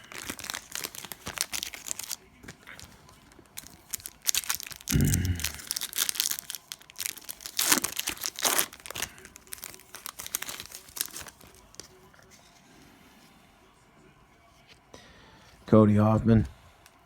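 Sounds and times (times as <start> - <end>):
foil pack tearing and crinkling: 0.0 - 11.9.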